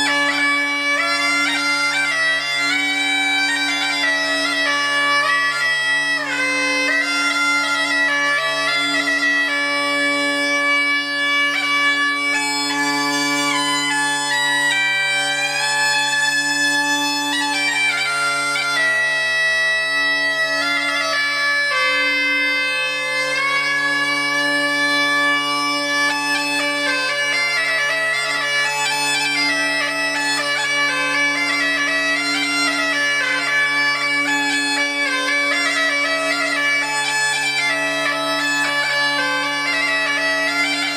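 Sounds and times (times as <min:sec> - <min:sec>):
bagpipes playing a melody: 0:00.0 - 0:40.9.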